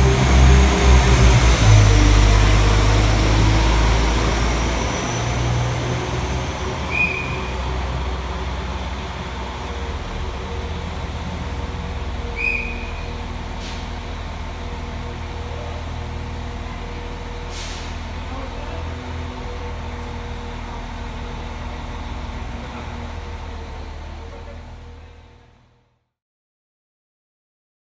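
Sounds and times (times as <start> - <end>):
diesel engines running: 0.0 - 25.8
brief hiss: 17.5 - 18.1.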